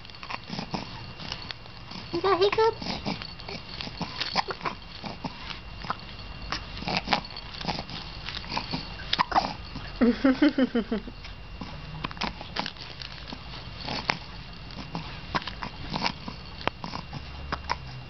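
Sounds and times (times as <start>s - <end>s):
baby hiccupping: 4.3s - 6.0s, 8.6s - 9.6s.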